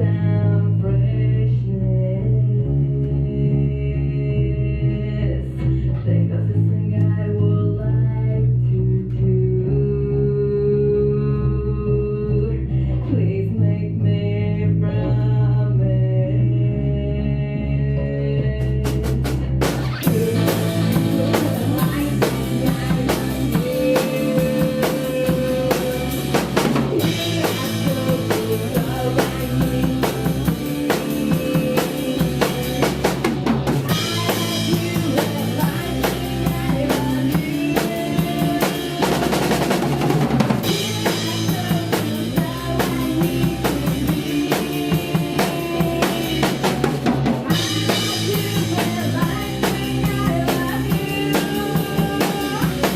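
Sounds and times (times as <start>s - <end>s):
live rock band playing: 18.7s - 52.9s.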